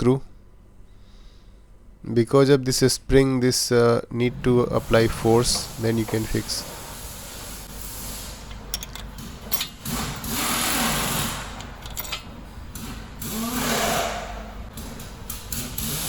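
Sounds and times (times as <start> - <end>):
power tool motor whirring: 9.9 - 11.5, 13.2 - 14.3.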